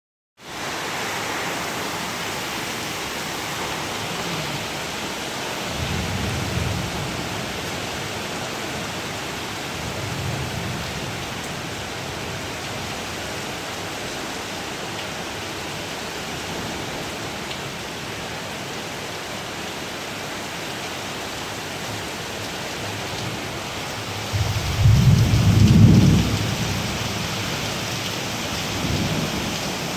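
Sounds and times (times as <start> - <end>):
heavy rain pouring: 0.4 - 29.9
low thunder rumbles: 5.7 - 7.5, 23.4 - 29.9.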